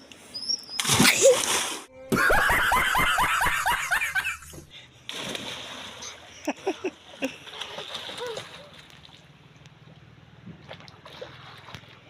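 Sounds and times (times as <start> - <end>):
river water running: 4.9 - 12.0.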